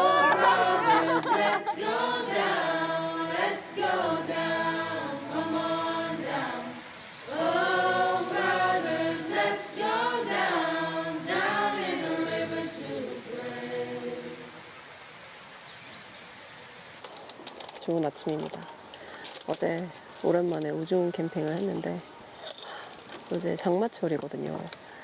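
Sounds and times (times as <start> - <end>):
choir-like singing: 0.0 - 14.9.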